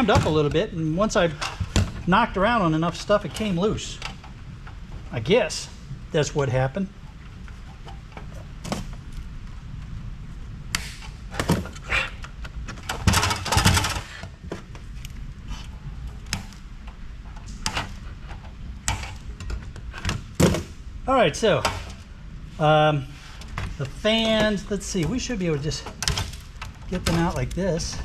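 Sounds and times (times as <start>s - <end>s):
tools and parts clunking: 0.0s - 5.0s, 11.0s - 20.8s, 23.2s - 28.0s
rattling: 12.6s - 20.7s.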